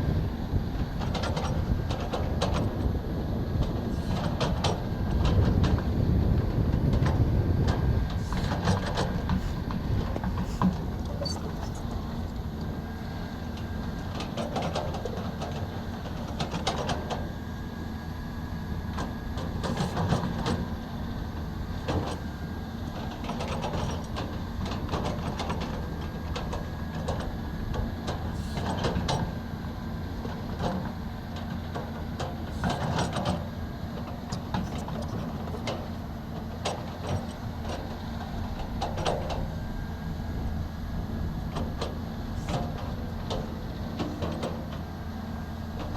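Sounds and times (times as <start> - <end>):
excavator diesel engine running: 0.0 - 45.9.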